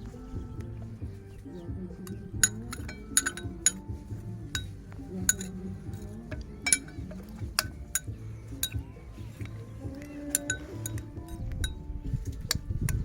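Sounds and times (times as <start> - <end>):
metal spoon clinking on plate: 2.1 - 3.9, 4.6 - 8.8.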